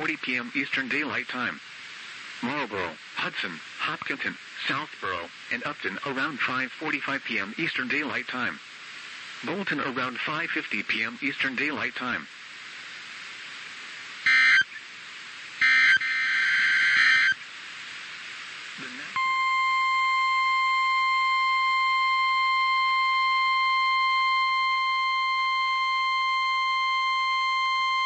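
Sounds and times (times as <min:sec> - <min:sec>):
buzzy digital data bursts: 0:14.2 - 0:14.8, 0:15.6 - 0:17.4
steady alarm tone: 0:14.3 - 0:14.8, 0:15.6 - 0:17.4, 0:19.2 - 0:28.0.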